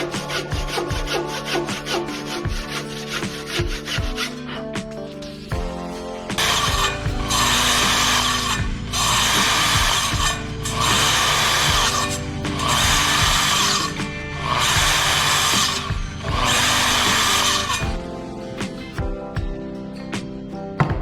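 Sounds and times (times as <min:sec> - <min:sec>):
woodworking tool cutting timber: 0:00.0 - 0:04.6, 0:06.3 - 0:18.0
background music: 0:00.0 - 0:21.0.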